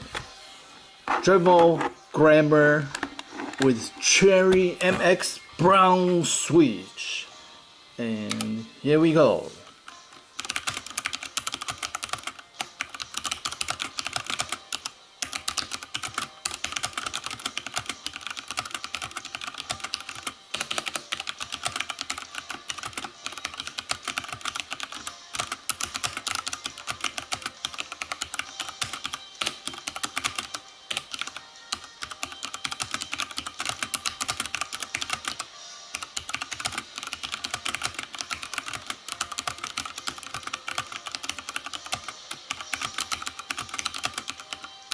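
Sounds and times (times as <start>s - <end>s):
mechanical keyboard typing: 10.4s - 44.9s.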